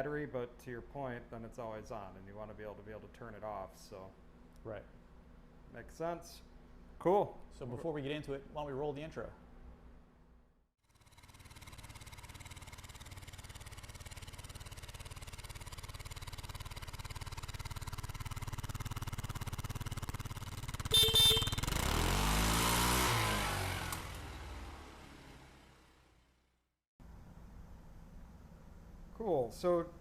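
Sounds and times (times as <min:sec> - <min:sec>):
motorcycle engine running: 0:10.8 - 0:26.4.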